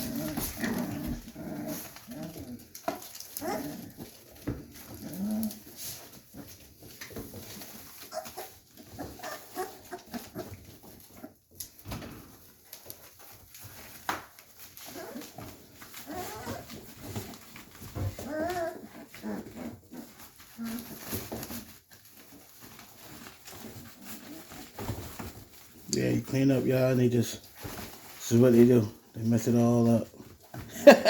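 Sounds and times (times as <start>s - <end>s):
puppies whimpering and yipping: 6.4s - 11.3s, 14.5s - 25.5s.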